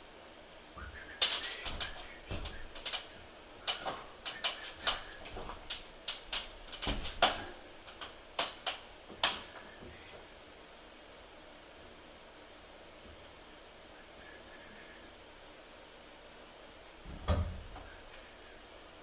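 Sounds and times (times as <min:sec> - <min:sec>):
tools and parts clicking and knocking: 0:03.7 - 0:09.5.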